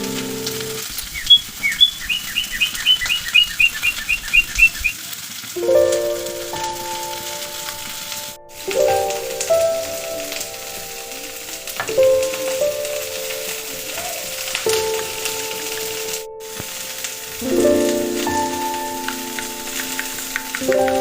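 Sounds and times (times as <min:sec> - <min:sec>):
soft background music: 0:00.0 - 0:00.8, 0:05.6 - 0:21.0
food sizzling in hot oil: 0:00.0 - 0:21.0.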